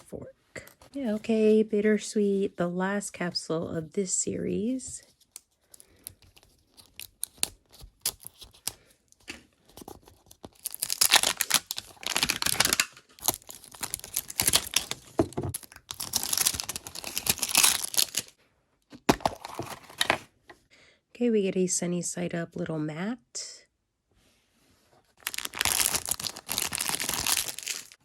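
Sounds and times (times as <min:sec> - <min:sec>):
plastic wrapping tearing and crinkling: 0:09.9 - 0:18.3, 0:25.2 - 0:28.0.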